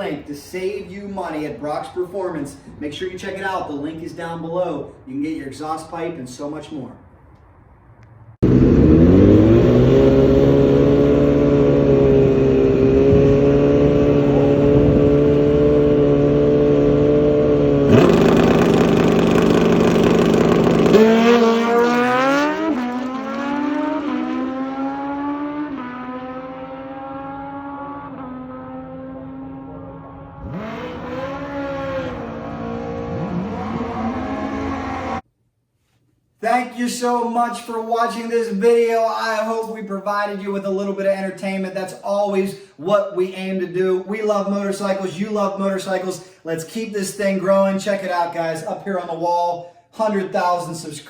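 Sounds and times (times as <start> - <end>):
motorcycle engine revving: 8.3 - 35.2.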